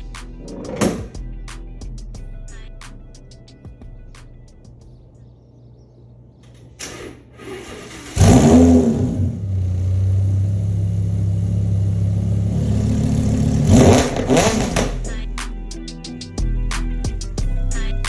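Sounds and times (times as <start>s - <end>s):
car engine revving: 7.6s - 15.1s.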